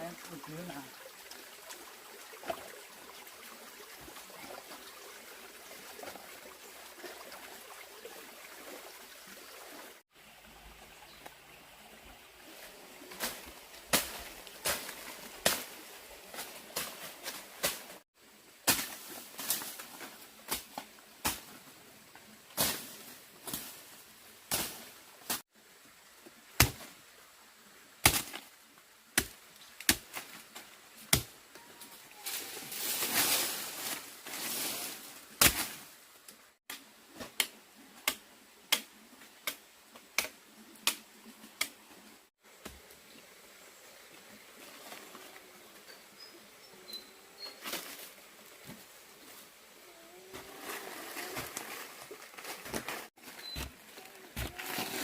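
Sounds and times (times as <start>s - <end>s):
hand tool chopping wood: 54.4s - 55.0s.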